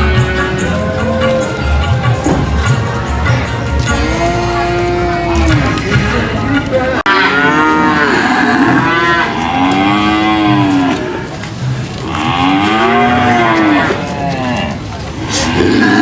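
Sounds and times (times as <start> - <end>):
cattle mooing: 3.3 - 16.0.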